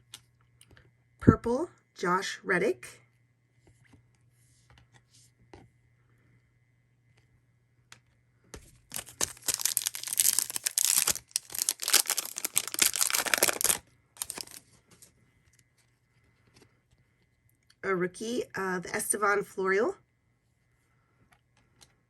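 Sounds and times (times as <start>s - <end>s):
foil wrapper crinkling and tearing: 8.9s - 15.1s.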